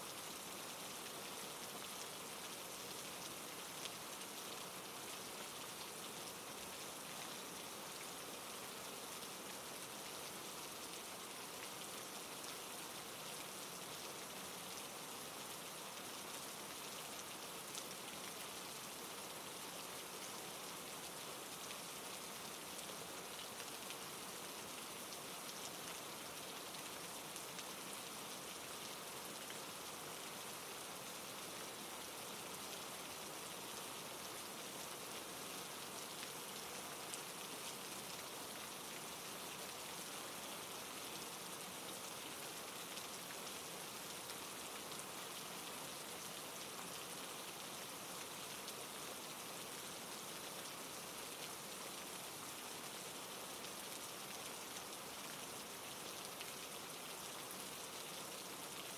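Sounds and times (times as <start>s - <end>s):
steady rain falling: 0.0s - 58.9s.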